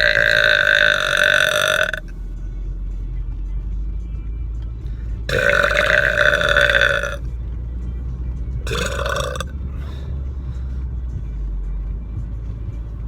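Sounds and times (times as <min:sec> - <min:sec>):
man burping loudly: 0:00.0 - 0:02.0, 0:05.3 - 0:07.2, 0:08.7 - 0:09.5
car rumble: 0:00.0 - 0:13.0.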